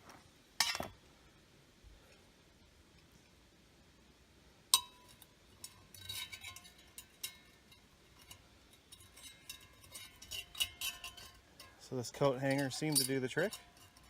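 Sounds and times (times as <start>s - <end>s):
metal cookware clinking: 0.6s - 0.9s, 4.8s - 14.0s.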